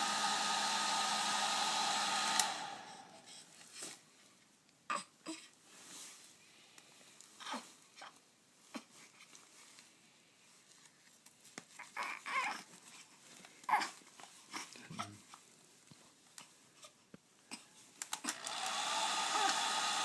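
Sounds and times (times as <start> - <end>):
hair dryer running: 0.0 - 3.5, 18.3 - 20.0
baby whimpering and crying: 4.9 - 5.6, 7.4 - 9.0, 11.8 - 15.2.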